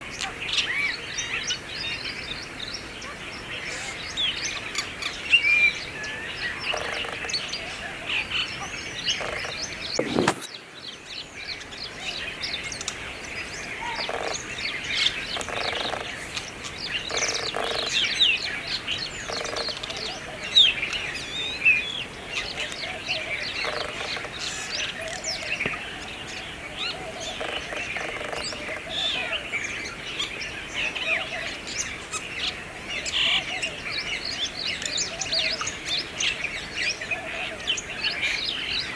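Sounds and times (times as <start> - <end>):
sharp click: 10.0 - 10.5.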